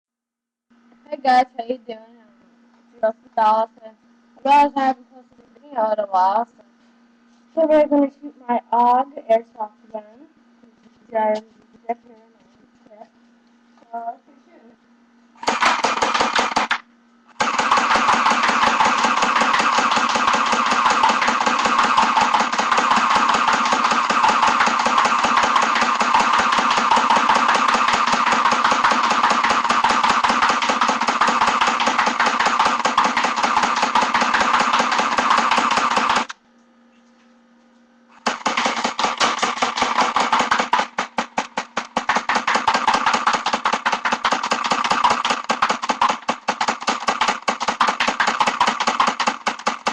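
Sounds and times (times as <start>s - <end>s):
airsoft rifle firing full auto: 15.4s - 36.3s, 38.2s - 49.9s.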